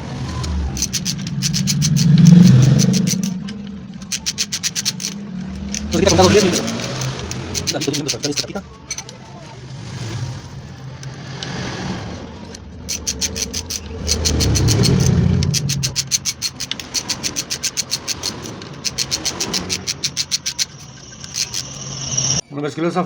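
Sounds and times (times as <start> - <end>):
low handling rumble: 0.0 - 17.0
ratchet wrench clicking: 0.3 - 9.2, 12.4 - 22.4.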